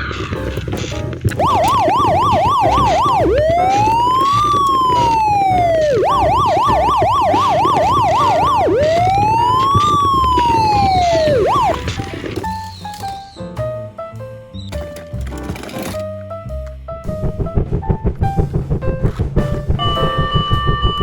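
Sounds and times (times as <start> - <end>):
toy electronic siren: 1.4 - 12.1.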